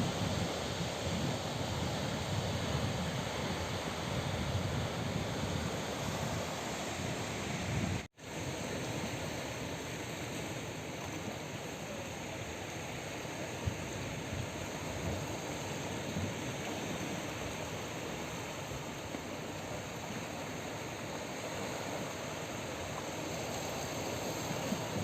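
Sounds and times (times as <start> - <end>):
wind rumble on microphone: 0.0 - 8.1
surf washing over rocks: 0.0 - 25.0.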